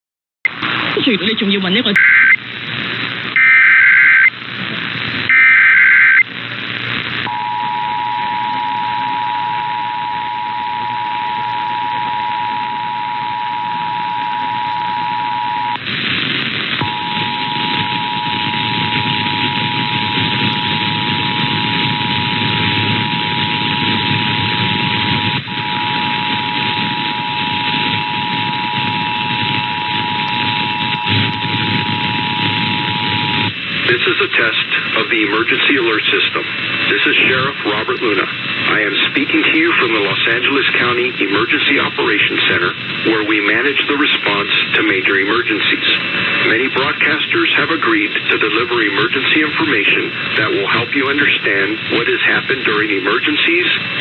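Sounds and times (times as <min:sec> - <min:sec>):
radio reception hiss: 0:00.4 - 0:54.0
warbling data bursts: 0:03.4 - 0:04.3, 0:05.3 - 0:06.3, 0:07.3 - 0:34.5
two-tone attention signal: 0:07.3 - 0:15.8, 0:16.8 - 0:33.5.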